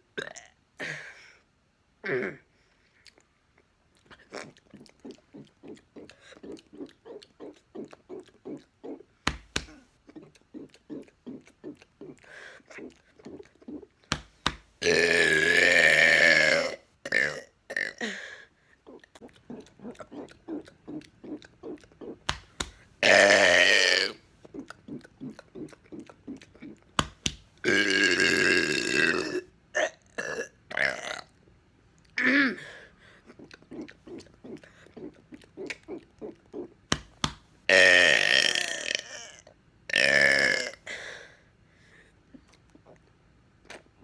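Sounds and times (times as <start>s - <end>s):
soft mouth sounds: 2.0s - 44.0s
man burping: 14.8s - 18.0s, 23.0s - 24.2s, 27.6s - 31.0s, 37.7s - 40.8s
throaty gulping sounds: 18.9s - 29.4s.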